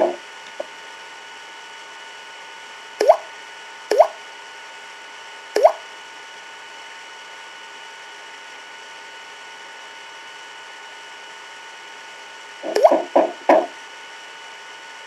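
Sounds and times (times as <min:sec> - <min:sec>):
sharp knocks: 0:12.7 - 0:13.7.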